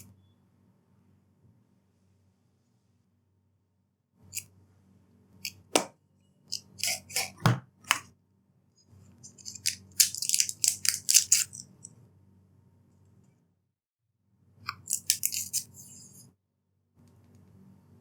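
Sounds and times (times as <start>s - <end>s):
packaging scraping: 6.5s - 7.4s, 9.3s - 11.6s
packaging clicks: 9.3s - 11.8s, 14.9s - 15.6s.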